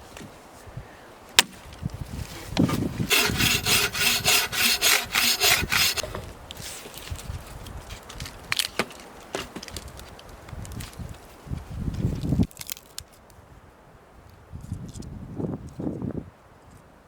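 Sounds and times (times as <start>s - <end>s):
hand saw cutting wood: 2.7s - 6.2s.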